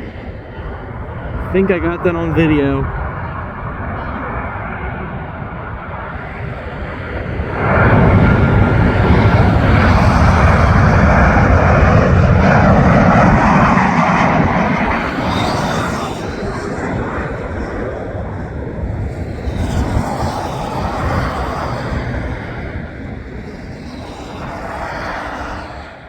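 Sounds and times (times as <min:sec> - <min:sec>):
jet airliner engine roar: 0:00.0 - 0:26.0.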